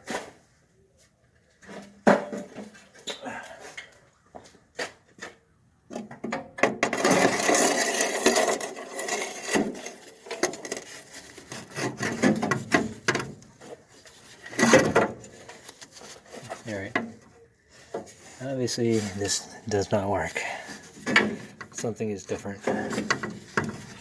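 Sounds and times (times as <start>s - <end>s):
metal scraping and knocking: 5.9s - 13.7s, 18.9s - 24.0s.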